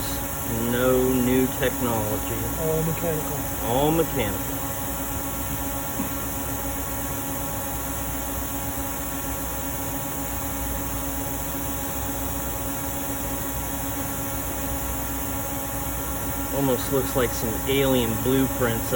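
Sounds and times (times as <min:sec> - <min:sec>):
mechanical hum: 0:00.0 - 0:18.9.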